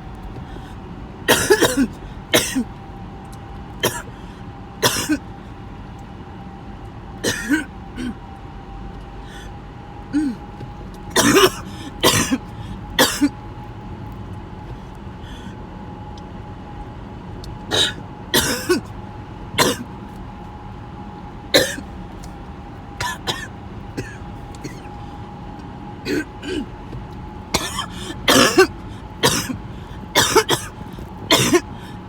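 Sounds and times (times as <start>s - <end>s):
faint steady hum: 0.0s - 32.0s
person coughing: 1.3s - 2.7s, 3.8s - 4.2s, 4.8s - 5.2s, 7.2s - 8.2s, 10.1s - 10.4s, 11.2s - 13.3s, 17.7s - 18.9s, 19.6s - 19.9s, 21.6s - 21.9s, 23.0s - 24.9s, 26.1s - 26.7s, 27.6s - 31.9s.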